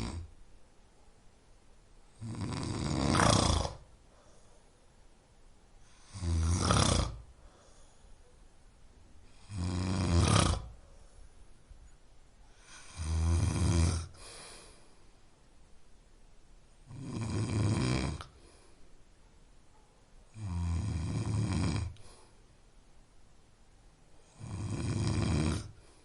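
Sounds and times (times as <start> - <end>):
person snoring: 0.0 - 0.3, 2.1 - 3.9, 5.8 - 7.4, 9.3 - 10.8, 12.5 - 14.8, 16.9 - 18.6, 20.3 - 22.3, 24.2 - 26.0.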